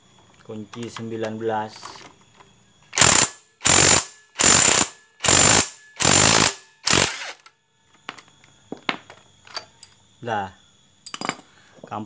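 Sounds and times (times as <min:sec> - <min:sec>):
ratchet wrench rattling: 0:02.9 - 0:07.3
faint metal clinks: 0:11.0 - 0:12.0.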